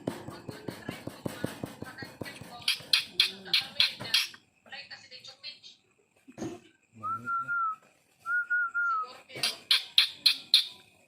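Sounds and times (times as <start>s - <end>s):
lovebird harsh chirps: 2.6s - 4.4s, 8.8s - 10.9s
lovebird whistling: 8.3s - 10.8s.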